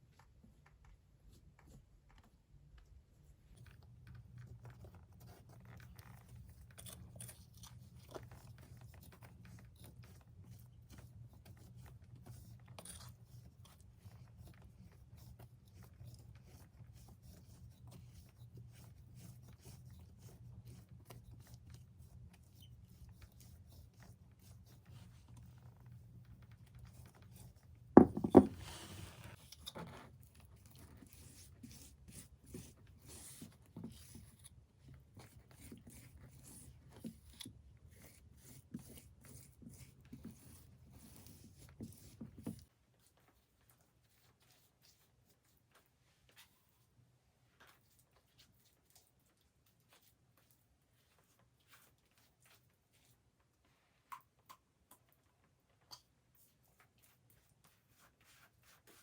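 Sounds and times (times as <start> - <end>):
handling scrapes and clicks: 3.6 - 10.3, 27.0 - 34.6.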